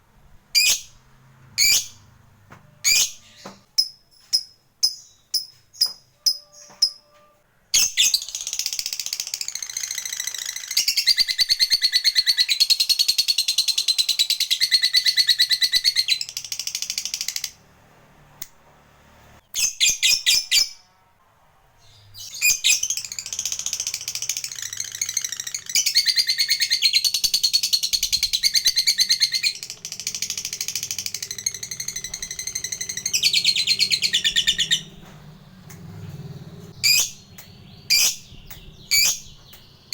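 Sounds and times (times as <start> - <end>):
sharp bird chirps: 22.0 - 39.9
lovebird chattering trill: 22.3 - 35.1, 36.7 - 39.6.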